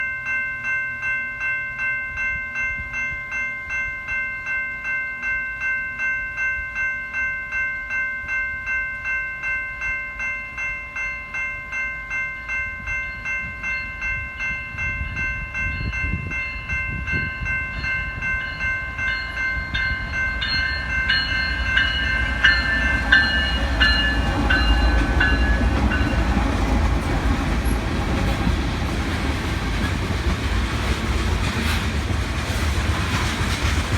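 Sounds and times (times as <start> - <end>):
crossing bell ringing: 0.0 - 33.9
diesel locomotive rumble: 14.7 - 33.9.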